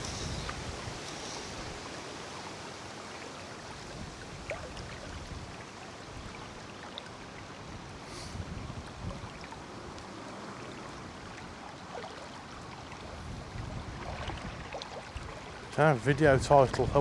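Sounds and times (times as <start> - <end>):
wind buffeting microphone: 0.0 - 1.9, 8.3 - 9.4, 13.0 - 17.0
river water rushing: 0.0 - 16.0.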